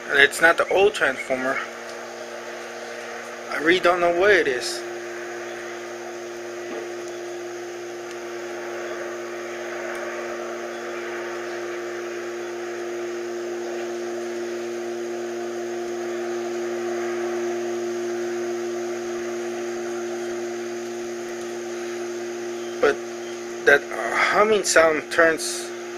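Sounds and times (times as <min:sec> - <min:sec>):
low steady humming: 0:00.0 - 0:25.9
hissing rush: 0:01.4 - 0:22.1.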